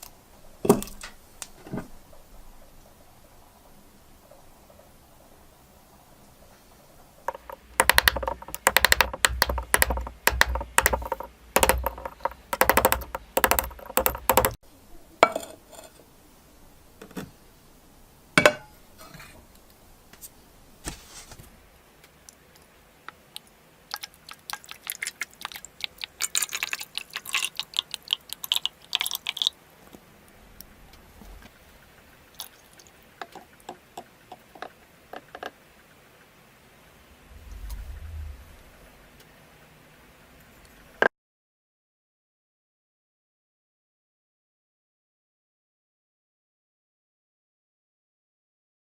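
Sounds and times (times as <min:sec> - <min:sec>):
rapid scraping and clicking strokes: 0:07.3 - 0:14.6
sharp knock: 0:07.3 - 0:14.6.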